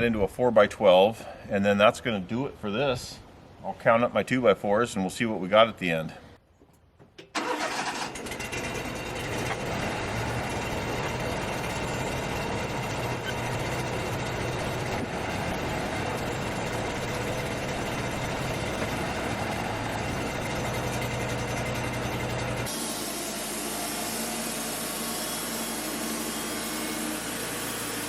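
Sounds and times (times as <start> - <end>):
engine running steadily: 7.4 - 28.0.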